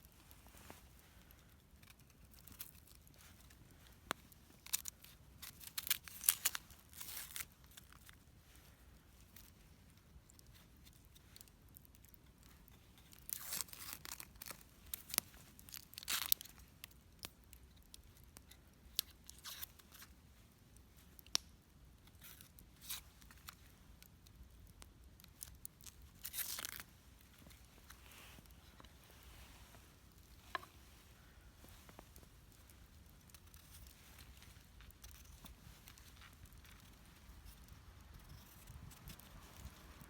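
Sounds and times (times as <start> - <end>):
tearing and rustling: 0.0 - 8.2, 12.7 - 16.6, 25.3 - 40.0.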